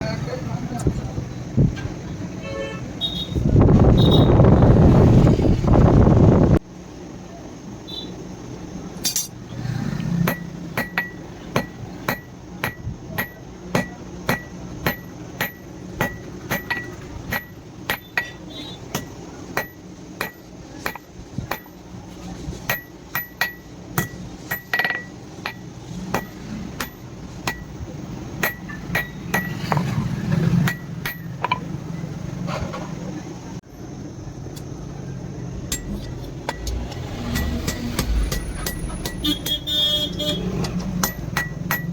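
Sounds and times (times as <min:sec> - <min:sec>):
hammer striking steel on anvil: 0:10.2 - 0:21.8, 0:22.7 - 0:27.7, 0:28.4 - 0:29.9, 0:30.6 - 0:31.7, 0:35.7 - 0:40.3, 0:41.0 - 0:41.9.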